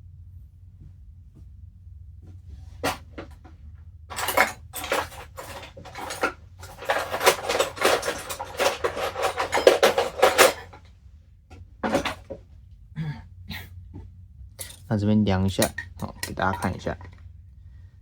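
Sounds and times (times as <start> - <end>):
metal tools clinking and clattering: 2.7 - 3.5, 4.1 - 10.9, 11.8 - 12.4, 15.5 - 17.2.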